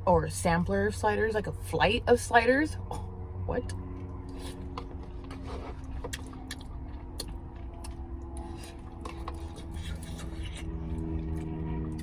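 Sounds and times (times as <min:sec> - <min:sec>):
low car cabin hum: 0:00.0 - 0:12.0
person chewing with mouth smacks: 0:04.3 - 0:12.0.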